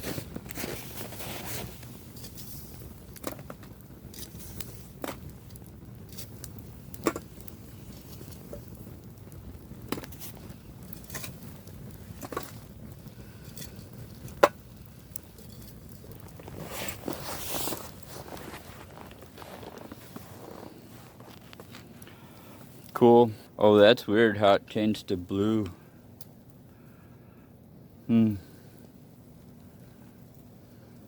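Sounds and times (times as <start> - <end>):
rustling: 0.0 - 23.0
wood fire crackling and popping: 0.0 - 31.0.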